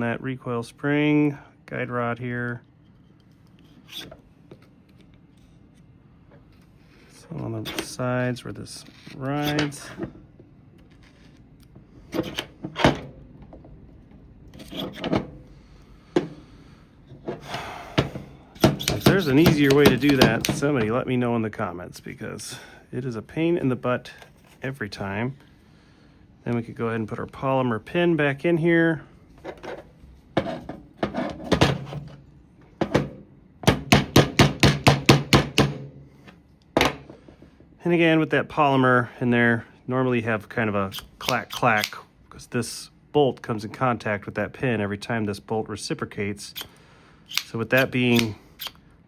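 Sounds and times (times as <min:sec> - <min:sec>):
metal parts scraping and rattling: 0:14.5 - 0:15.4, 0:18.6 - 0:20.9
metal parts clicking: 0:18.6 - 0:20.7, 0:40.9 - 0:42.0, 0:47.3 - 0:48.8.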